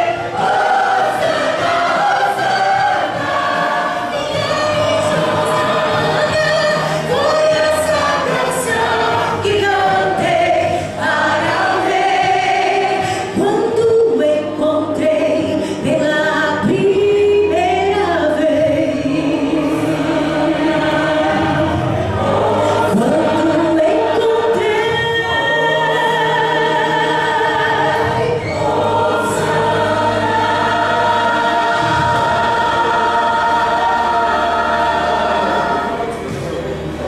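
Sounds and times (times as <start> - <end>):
choir singing sacred piece: 0.0 - 15.6, 17.4 - 37.0.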